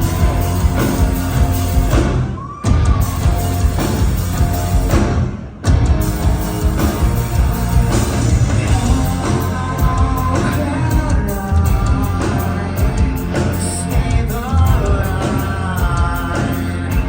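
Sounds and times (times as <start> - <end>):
live rock band playing: 0.0 - 17.0
person singing: 8.4 - 17.0.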